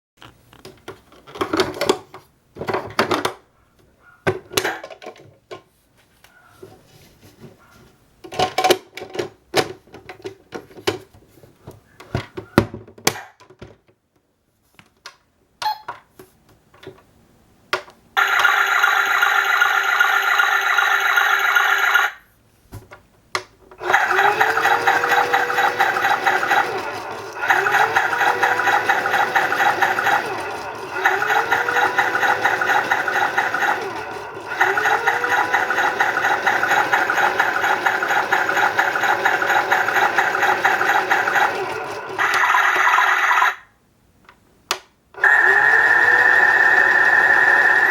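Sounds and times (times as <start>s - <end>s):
toy electronic sound effect: 18.2s - 22.2s, 42.2s - 43.7s
toy clicks and knocks: 23.9s - 43.6s.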